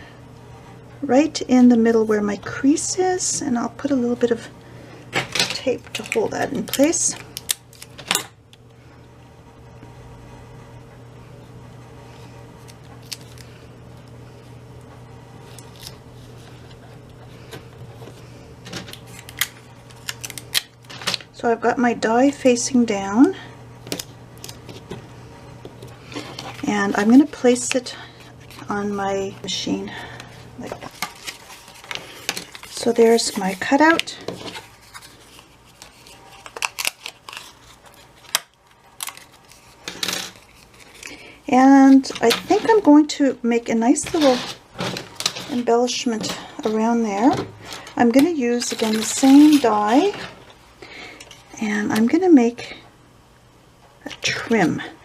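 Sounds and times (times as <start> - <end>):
paper rustling: 25.8 - 29.0, 30.0 - 41.3, 47.6 - 50.5.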